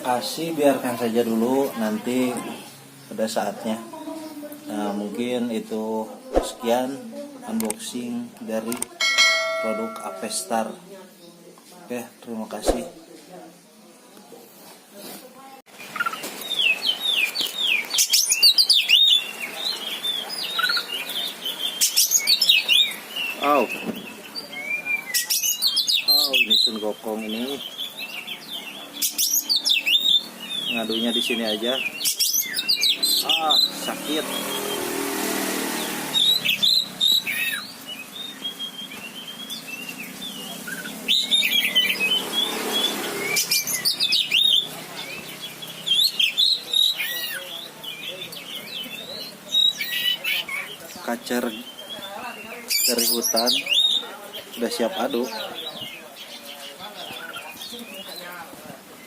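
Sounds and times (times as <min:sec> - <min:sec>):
bird singing whistled notes: 0:29.0 - 0:34.9, 0:36.1 - 0:50.5.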